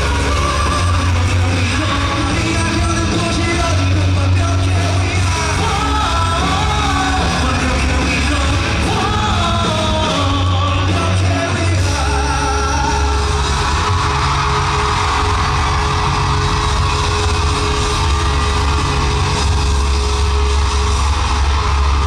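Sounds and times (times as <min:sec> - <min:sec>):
person singing: 0:00.0 - 0:14.6
live rock band playing: 0:00.0 - 0:22.0.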